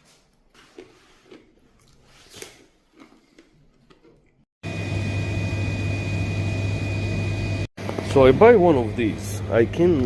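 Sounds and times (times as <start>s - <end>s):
person chewing food: 0.0s - 4.5s.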